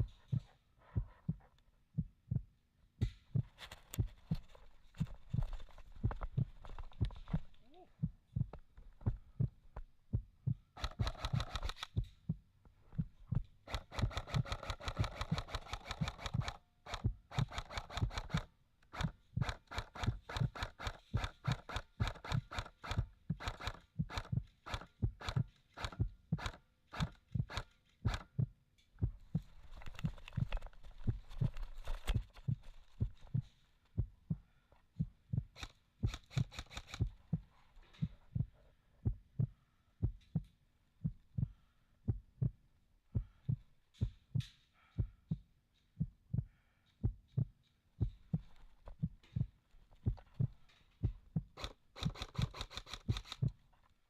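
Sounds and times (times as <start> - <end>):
fast clicking: 3.5 - 7.6, 10.8 - 12.2, 13.7 - 28.4, 29.2 - 33.6, 35.5 - 38.2, 48.0 - 53.6.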